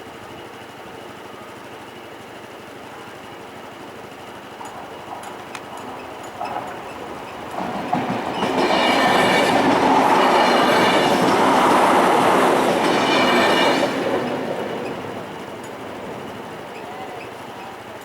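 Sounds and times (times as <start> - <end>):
train wheels running on rails: 0.0 - 18.0.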